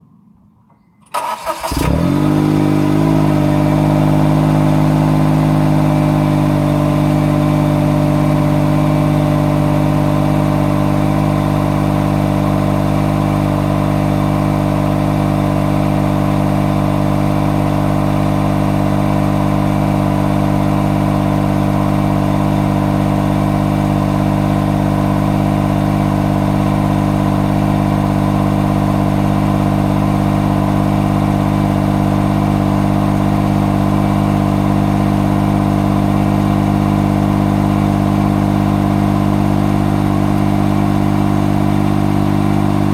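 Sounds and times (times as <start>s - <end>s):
car engine idling: 1.1s - 42.9s.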